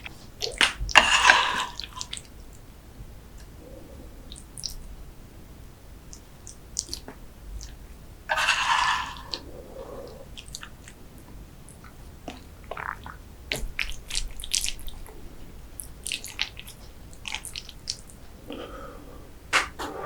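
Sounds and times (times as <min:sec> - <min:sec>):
wet chewing: 0:00.0 - 0:02.4, 0:06.1 - 0:18.2
mouth clicks and smacks: 0:00.0 - 0:02.6, 0:03.4 - 0:04.9, 0:06.1 - 0:15.2, 0:15.8 - 0:18.7, 0:19.5 - 0:20.0.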